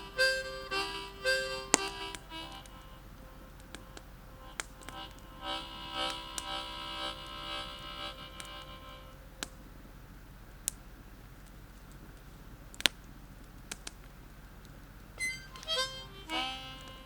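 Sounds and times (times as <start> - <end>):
buzzing whine: 0.0 - 9.4
campfire wood crackling: 0.0 - 17.0
faint low hum: 0.0 - 17.0.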